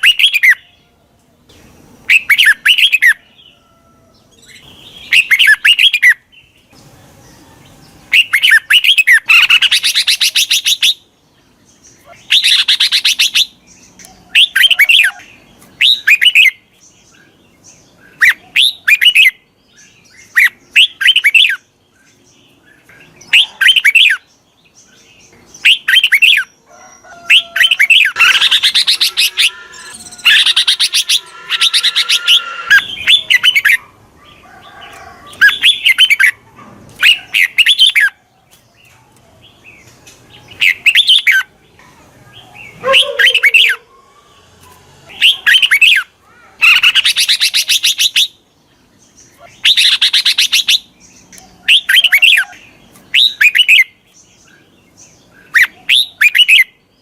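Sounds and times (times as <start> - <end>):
bird singing whistled phrases: 4.6 - 6.2, 27.3 - 33.8, 45.2 - 48.3.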